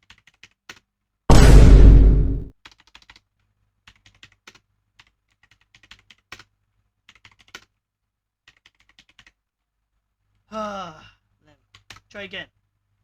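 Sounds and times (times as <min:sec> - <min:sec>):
mechanical keyboard typing: 0:00.0 - 0:00.9, 0:02.6 - 0:06.5, 0:07.1 - 0:07.8, 0:08.4 - 0:09.4.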